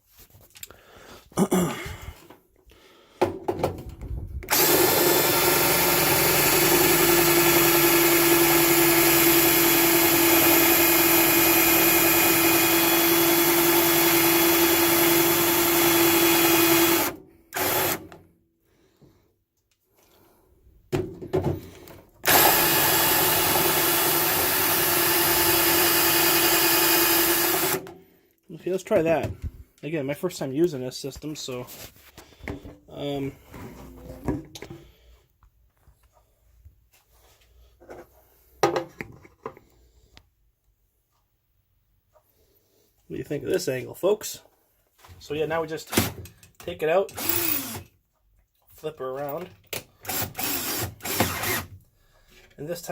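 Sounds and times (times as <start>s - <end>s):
power drill running: 4.5s - 18.2s, 22.2s - 27.9s, 47.1s - 47.9s, 50.0s - 51.7s.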